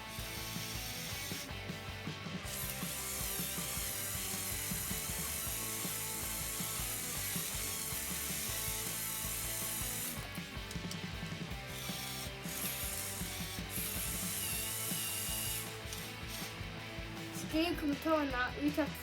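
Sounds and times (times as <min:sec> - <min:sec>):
plastic gears ratcheting rattle: 0:02.5 - 0:16.6.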